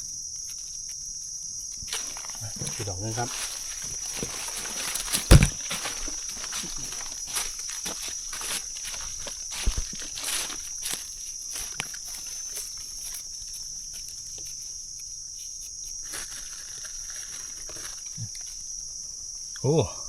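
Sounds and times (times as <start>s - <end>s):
insects buzzing: 0.0s - 20.0s
footsteps in leaf litter: 1.9s - 14.2s, 16.0s - 18.6s.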